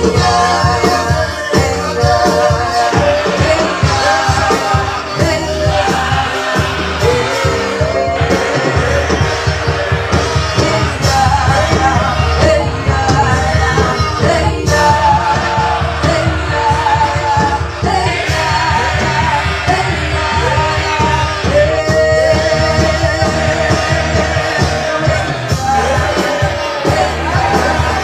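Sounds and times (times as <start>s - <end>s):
band with drums and guitar: 0.0s - 28.0s
voices singing: 0.0s - 28.0s.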